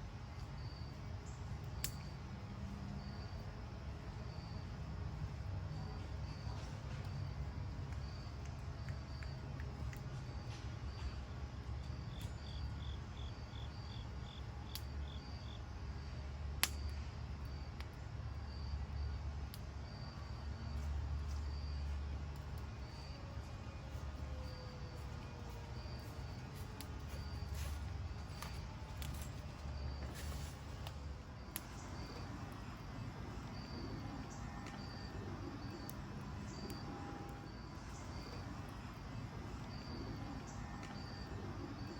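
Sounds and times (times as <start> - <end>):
slow steady cricket chirp: 0.0 - 41.9
sharp snap: 16.6 - 16.9.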